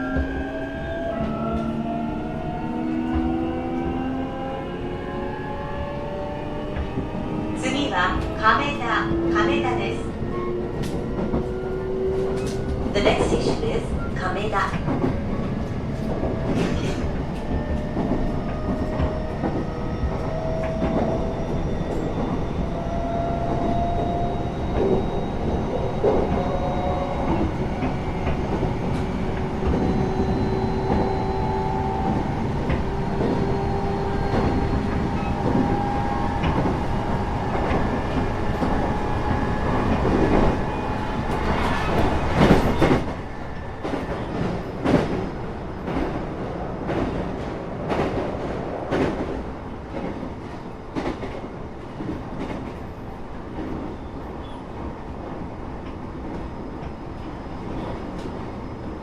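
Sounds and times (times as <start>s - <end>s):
train wheels rumbling on rails: 0.0s - 59.0s
clicks and clacks: 10.7s - 11.5s, 12.1s - 21.2s.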